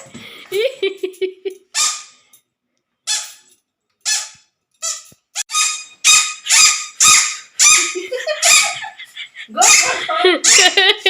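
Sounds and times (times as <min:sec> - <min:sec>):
squeaky dog toy squeaking: 0:01.7 - 0:02.2, 0:03.0 - 0:08.9, 0:09.6 - 0:10.8.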